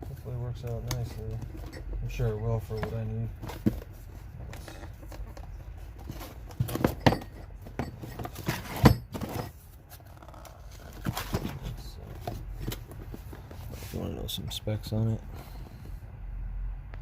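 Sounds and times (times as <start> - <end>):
handling knocks and clicks: 0.6 - 13.9.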